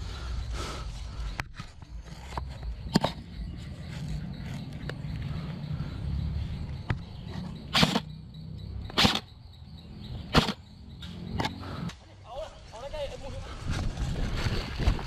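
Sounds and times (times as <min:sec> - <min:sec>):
airsoft gun shots: 0:07.7 - 0:08.1, 0:08.9 - 0:09.3, 0:10.3 - 0:10.6.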